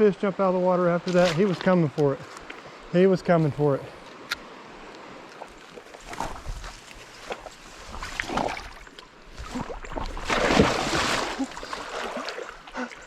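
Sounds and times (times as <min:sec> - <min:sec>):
water splashing and sloshing: 0:04.0 - 0:13.0.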